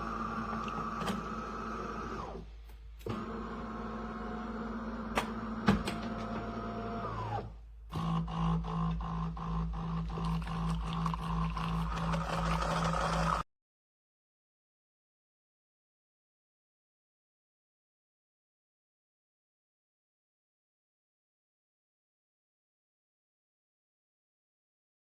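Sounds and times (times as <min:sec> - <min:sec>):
small motor humming: 0:06.2 - 0:13.4.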